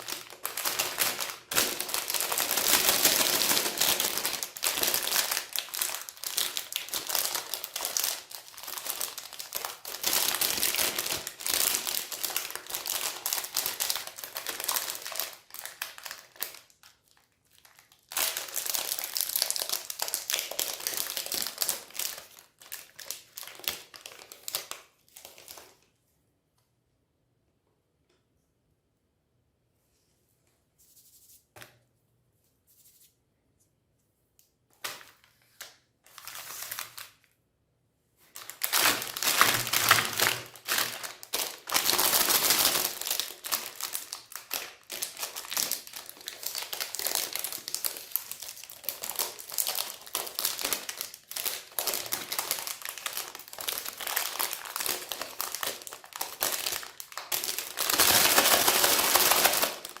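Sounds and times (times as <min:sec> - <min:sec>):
dense crackling and crinkling: 0:00.0 - 0:25.9, 0:38.2 - 1:00.0.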